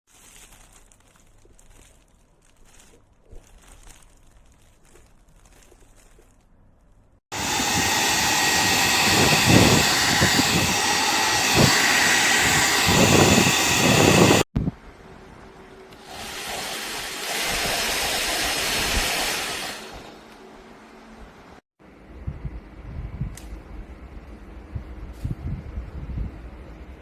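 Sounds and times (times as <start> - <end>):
hair dryer running: 7.3 - 14.5, 15.9 - 20.4
air buffeting microphone: 7.4 - 14.8.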